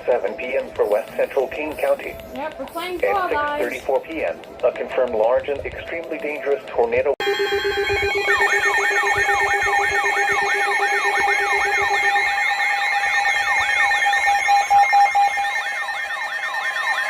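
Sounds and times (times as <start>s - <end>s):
steady alert tones: 0.0s - 17.0s
electronic alert sweep: 7.2s - 17.0s
low pulsing tone: 7.2s - 17.0s.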